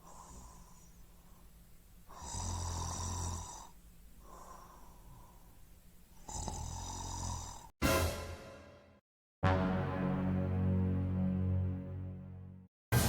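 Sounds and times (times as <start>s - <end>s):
quiet breath: 0.0s - 7.7s
loud snoring: 2.1s - 3.8s, 6.2s - 7.8s.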